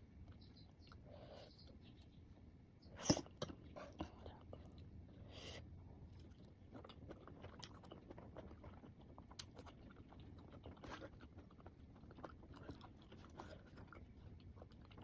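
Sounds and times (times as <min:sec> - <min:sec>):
close-up wet chewing: 0:05.9 - 0:15.0.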